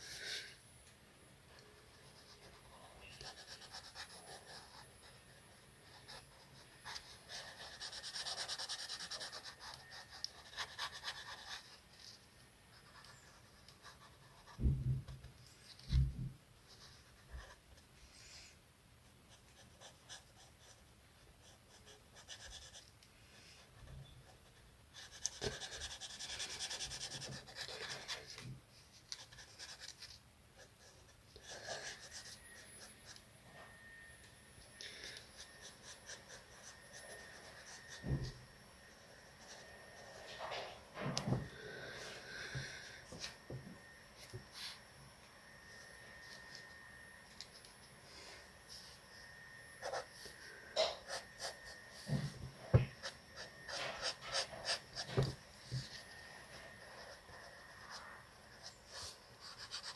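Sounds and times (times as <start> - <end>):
crayon scratching on paper: 1.9 - 11.9, 24.9 - 28.4, 30.8 - 33.2, 52.7 - 58.0.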